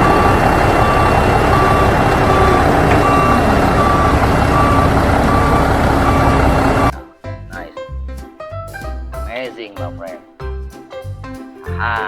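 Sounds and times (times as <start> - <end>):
truck engine noise: 0.0 - 6.9
truck reversing alarm beeping: 0.0 - 6.9.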